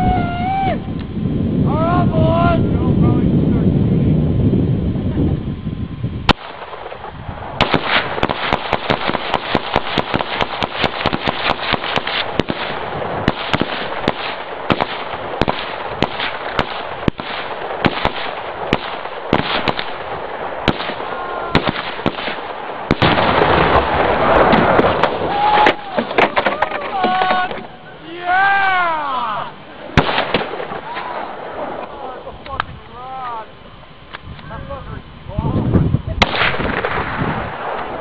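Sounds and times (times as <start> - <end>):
rifle shots: 6.3 - 26.4, 29.9 - 31.9, 36.2 - 38.0.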